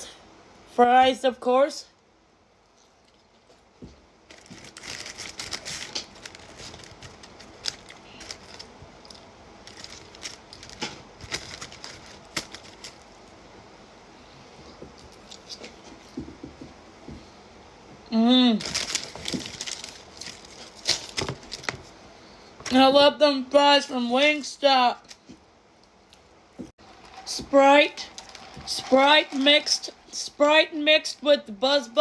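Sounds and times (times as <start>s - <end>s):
food packaging crinkling: 4.2s - 13.3s, 18.6s - 21.9s, 26.8s - 30.2s.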